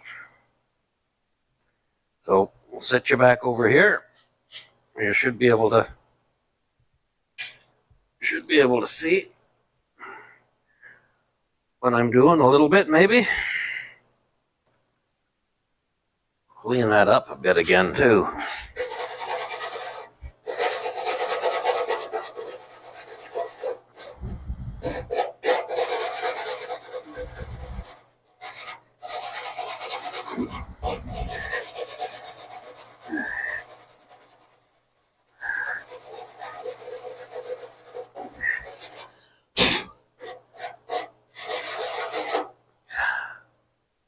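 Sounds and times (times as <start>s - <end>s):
hand scrubbing metal rasping: 18.4s - 39.2s, 40.2s - 42.5s.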